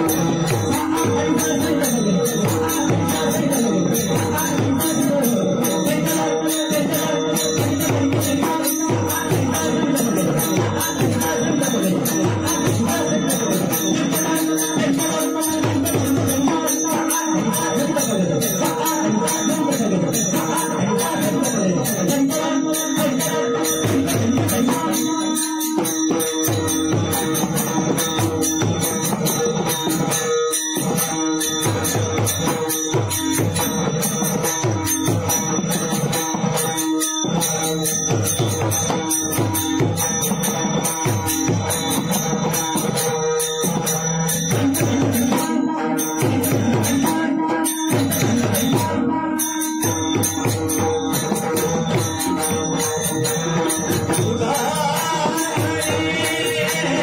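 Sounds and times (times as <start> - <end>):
hand cymbals struck: 0.0 - 57.0
group chanting: 51.6 - 57.0.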